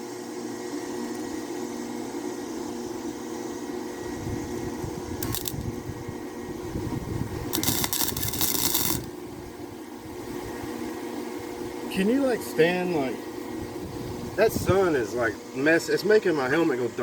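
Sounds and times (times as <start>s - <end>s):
steady machine hum: 0.0s - 17.0s
welding arc crackling: 5.2s - 5.7s, 7.5s - 9.2s.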